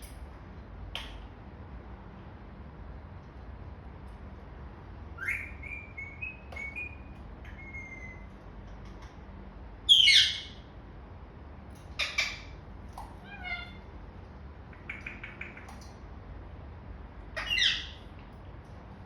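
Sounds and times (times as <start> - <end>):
parakeet whistled chirps: 5.2 - 8.3, 9.9 - 10.6, 17.4 - 18.0
parakeet harsh squawks: 9.9 - 10.6, 12.0 - 12.6, 13.2 - 13.8, 17.4 - 18.0.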